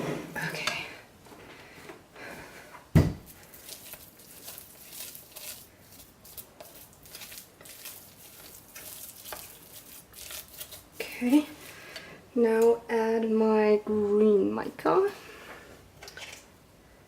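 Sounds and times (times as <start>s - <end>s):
spatula squishing and scraping paste: 3.3s - 12.1s.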